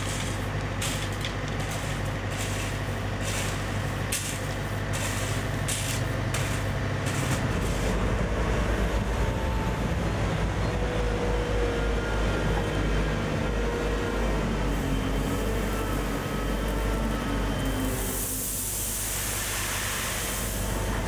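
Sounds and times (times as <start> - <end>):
diesel engines droning: 0.0 - 21.0
hiss bursts: 17.9 - 21.0.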